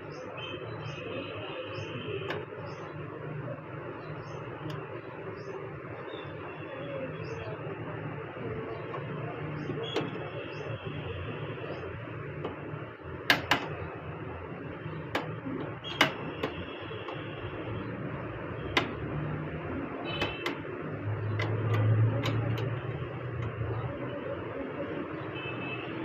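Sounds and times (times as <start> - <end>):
clicks and knocks of tools: 8.8 - 10.3, 13.2 - 13.9, 15.0 - 17.4, 18.7 - 19.2, 20.0 - 23.7.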